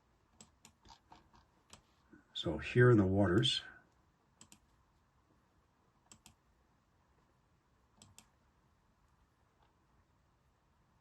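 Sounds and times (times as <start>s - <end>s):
computer mouse clicks: 0.3s - 1.9s, 4.4s - 4.7s, 6.0s - 6.4s, 8.0s - 8.4s.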